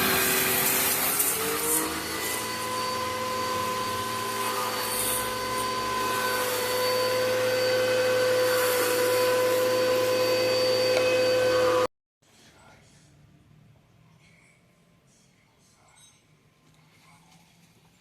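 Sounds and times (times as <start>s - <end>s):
pressure washer motor whine: 0.0s - 11.9s.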